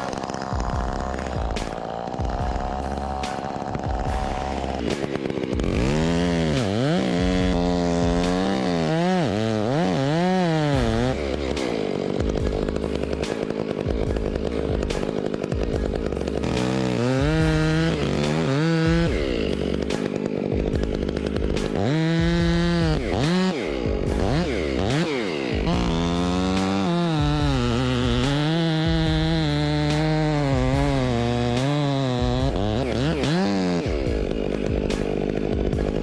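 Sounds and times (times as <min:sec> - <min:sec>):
chainsaw cutting wood: 0:00.0 - 0:36.0
chainsaw revving: 0:00.0 - 0:36.0.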